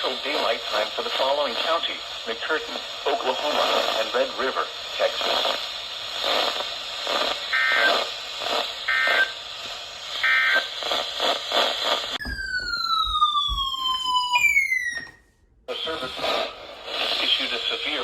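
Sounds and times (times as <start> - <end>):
siren-like alert tone sliding down: 12.2 - 15.2.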